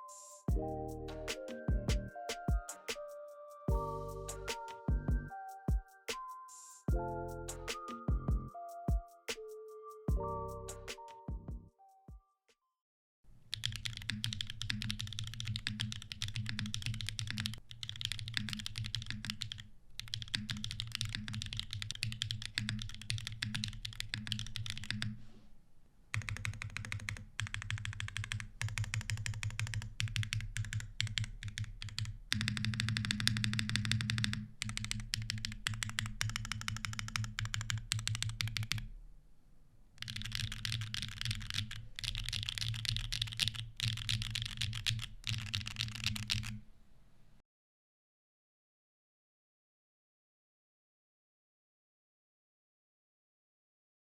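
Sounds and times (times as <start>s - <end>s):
fast mechanical keyboard typing: 13.5s - 25.2s, 26.1s - 38.9s, 40.0s - 46.6s.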